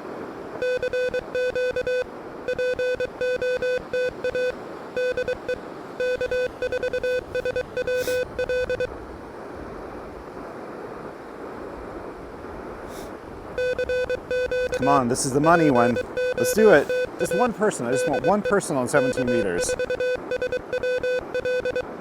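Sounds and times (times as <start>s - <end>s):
morse code beeps: 0.6s - 8.9s, 13.6s - 22.0s
steady radio hiss: 3.5s - 19.9s.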